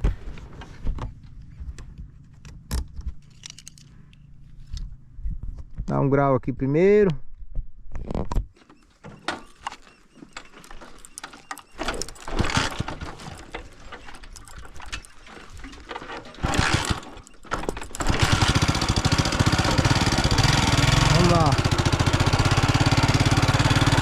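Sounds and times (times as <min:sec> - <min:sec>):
motorcycle engine idling: 0:18.2 - 0:24.0.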